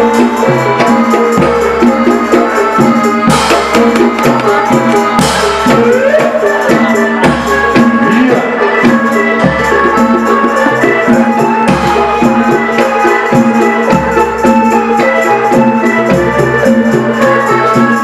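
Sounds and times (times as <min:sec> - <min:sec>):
deep drum beat: 0:00.0 - 0:12.8
jingling percussion: 0:00.0 - 0:18.0
lively folk music: 0:00.0 - 0:18.0.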